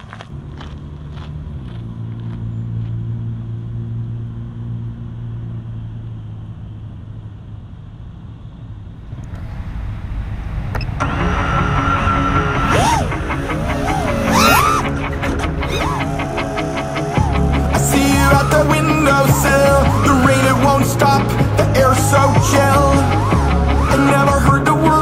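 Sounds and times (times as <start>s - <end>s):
quadcopter motors whining: 12.4s - 20.5s.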